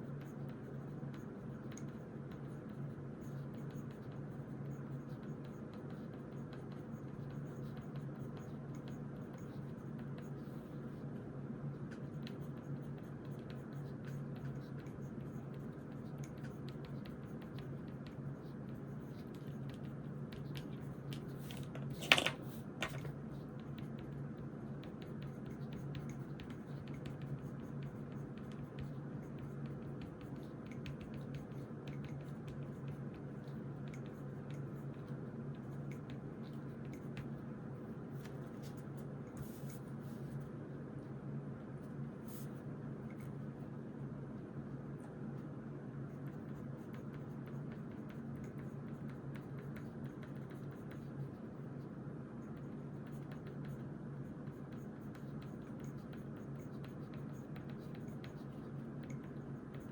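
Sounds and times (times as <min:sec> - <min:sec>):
pen scratching on paper: 0:12.0 - 0:24.2, 0:38.2 - 0:40.4, 0:46.3 - 0:51.8, 0:52.4 - 0:59.9
object set down on desk: 0:21.5 - 0:23.1.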